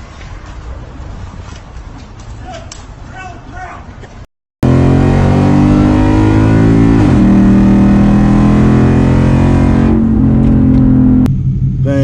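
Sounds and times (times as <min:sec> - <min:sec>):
car engine at full throttle: 0:04.6 - 0:12.0.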